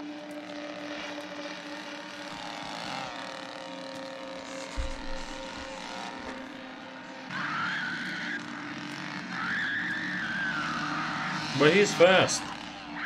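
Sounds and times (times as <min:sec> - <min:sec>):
chainsaw engine running: 0:00.0 - 0:13.0
dull thump: 0:04.8 - 0:05.5.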